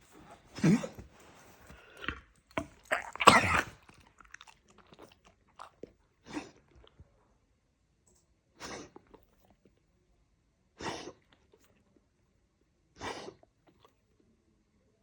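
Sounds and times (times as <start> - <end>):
dog coughing and hacking: 0.4 - 4.3, 8.6 - 9.0, 10.8 - 11.3, 13.0 - 13.5.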